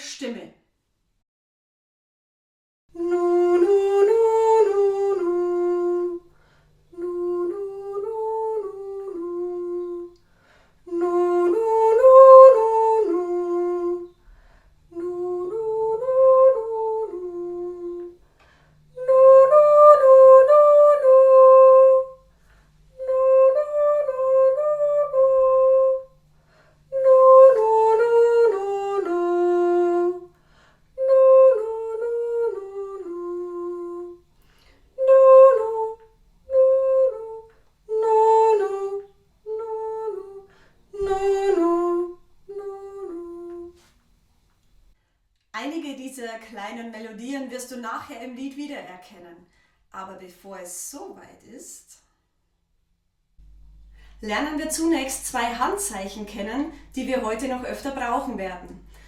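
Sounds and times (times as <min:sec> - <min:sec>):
woman singing wordless phrases: 0:00.0 - 0:00.5, 0:03.0 - 0:06.3, 0:07.0 - 0:10.2, 0:10.9 - 0:14.1, 0:14.9 - 0:18.2, 0:26.9 - 0:30.3, 0:35.0 - 0:43.8, 0:45.6 - 0:52.0, 0:54.2 - 0:59.0.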